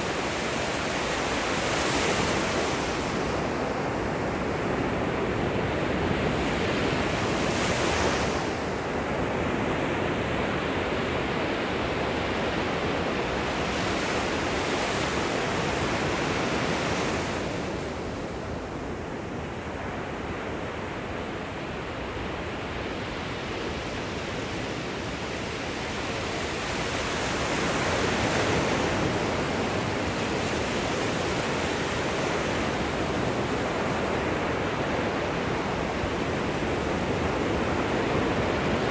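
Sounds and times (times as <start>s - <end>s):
ocean surf washing on shore: 0.0s - 38.9s.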